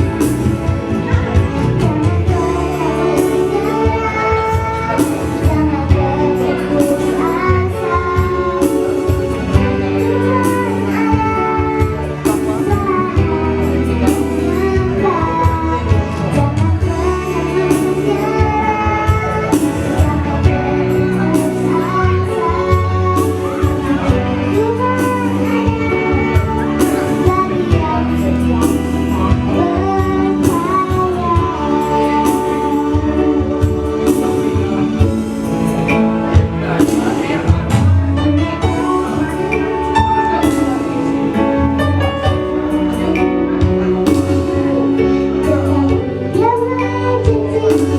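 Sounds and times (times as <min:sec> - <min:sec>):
woman singing: 0:00.0 - 0:35.4, 0:38.2 - 0:41.4, 0:42.2 - 0:47.9
held instrumental chords: 0:00.0 - 0:47.9
steady percussive beat: 0:21.4 - 0:45.0.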